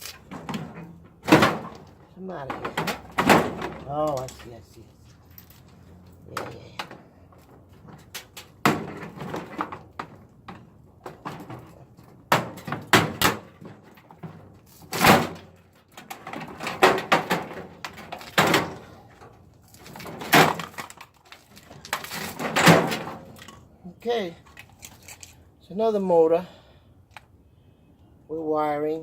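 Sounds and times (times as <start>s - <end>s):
metal parts and tools clanking: 0.0s - 23.7s, 24.4s - 25.5s.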